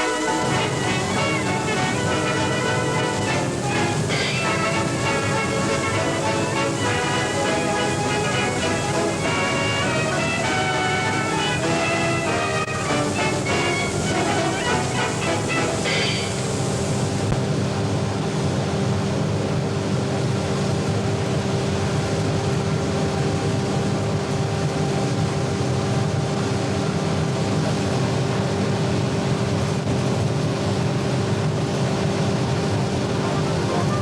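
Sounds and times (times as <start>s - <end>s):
music: 0.0s - 17.0s, 32.9s - 34.0s
constant hiss: 0.0s - 18.6s
low hum with fixed tones: 0.0s - 34.0s.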